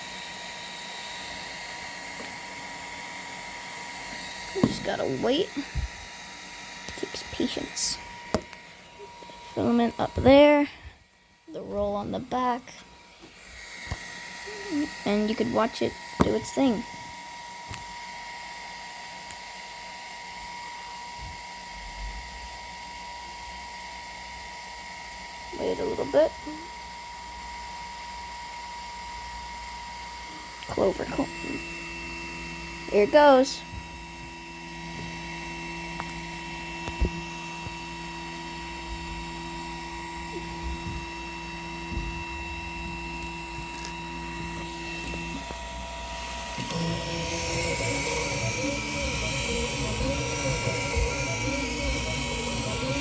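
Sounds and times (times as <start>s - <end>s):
cooling fan hissing: 30.2s - 53.0s
high-pitched whine: 30.7s - 53.0s.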